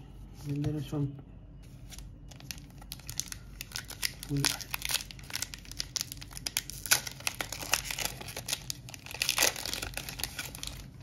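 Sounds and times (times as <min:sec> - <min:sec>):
foil wrapper crinkling: 0:02.2 - 0:11.0.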